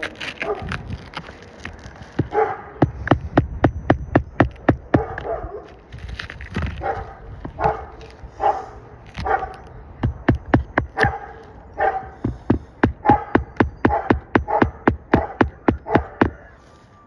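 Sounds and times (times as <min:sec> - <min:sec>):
dog barking: 0:00.4 - 0:00.8, 0:02.2 - 0:03.0, 0:04.9 - 0:05.8, 0:06.7 - 0:09.7, 0:10.8 - 0:12.3, 0:12.9 - 0:16.6
hammer driving nails into shingles: 0:02.1 - 0:05.2, 0:10.0 - 0:11.2, 0:12.1 - 0:16.6.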